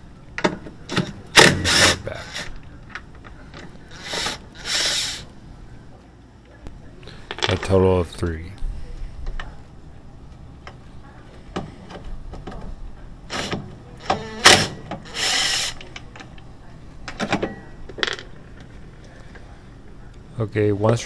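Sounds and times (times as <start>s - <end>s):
tool clicks and mechanical bursts: 0.4s - 3.0s, 13.3s - 16.0s.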